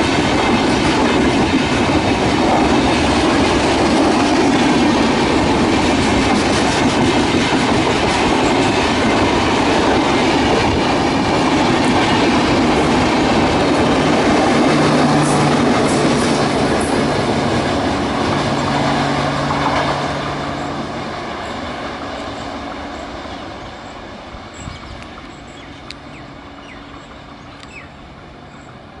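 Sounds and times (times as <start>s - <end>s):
train rumbling on track: 0.0s - 29.0s
faint sharp ticks: 25.8s - 26.0s.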